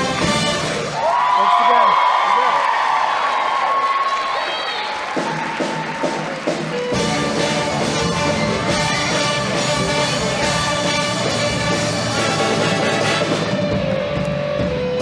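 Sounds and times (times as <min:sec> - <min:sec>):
live band music: 0:00.0 - 0:01.1, 0:05.1 - 0:15.0.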